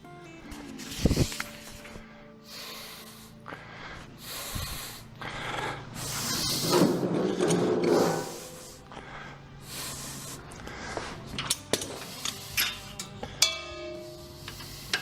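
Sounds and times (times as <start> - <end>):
metal rubbing and scraping: 0.6 - 2.0, 5.9 - 8.9, 9.8 - 15.0
ringing metal clank: 13.4 - 15.0.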